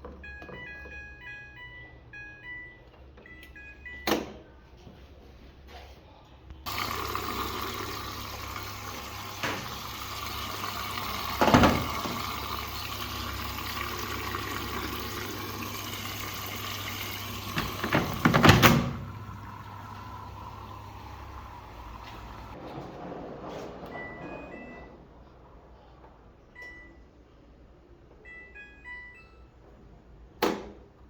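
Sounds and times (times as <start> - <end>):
washing machine low hum: 6.6 - 27.3
washing machine water rushing: 6.7 - 22.9
washing machine knocks: 9.2 - 12.6, 15.6 - 19.2.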